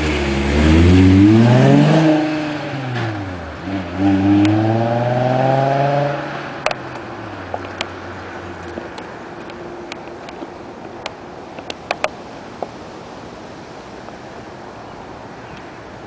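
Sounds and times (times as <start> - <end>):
car engine revving: 0.0 - 8.9.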